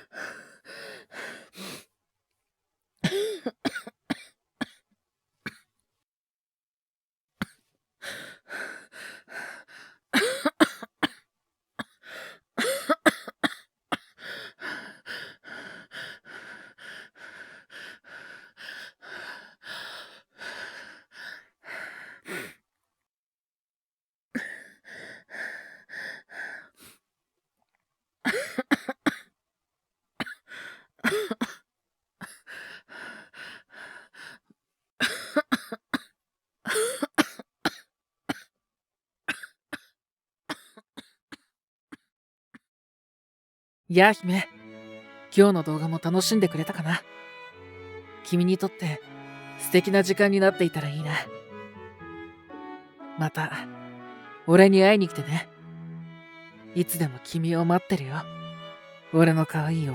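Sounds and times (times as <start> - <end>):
person coughing harshly: 12.6 - 14.1.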